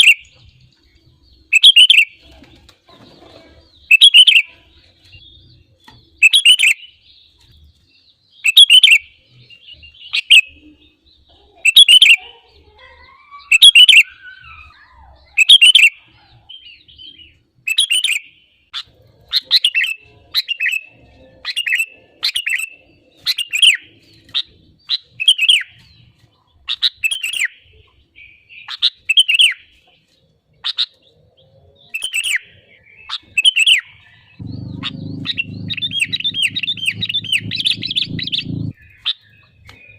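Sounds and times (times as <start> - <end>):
bird singing: 0.0 - 2.4, 3.1 - 12.2, 30.7 - 39.9.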